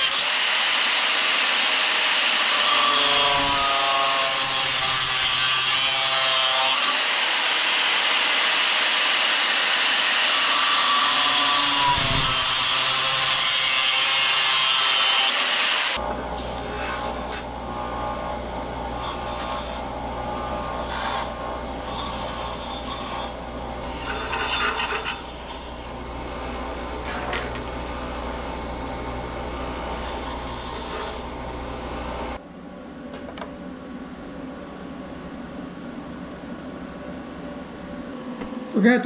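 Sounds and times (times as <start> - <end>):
power tool cutting steel: 0.0 - 32.4.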